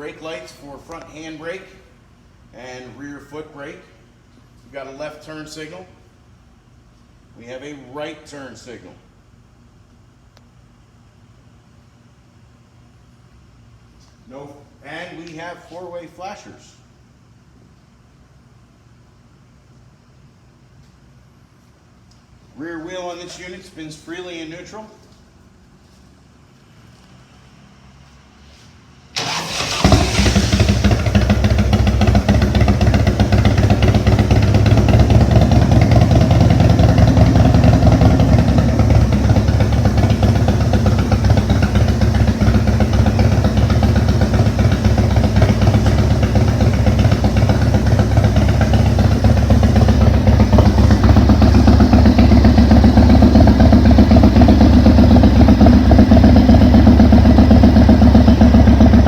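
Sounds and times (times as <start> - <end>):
motorcycle engine starting and running: 29.2 - 59.0.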